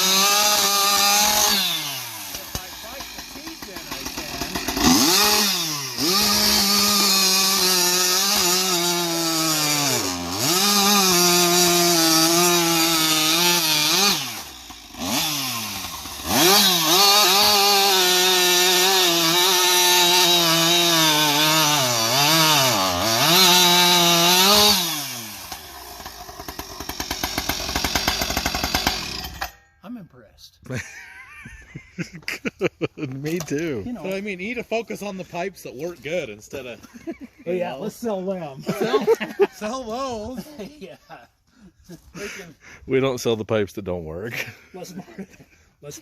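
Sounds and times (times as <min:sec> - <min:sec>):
chainsaw revving: 0:00.0 - 0:29.6.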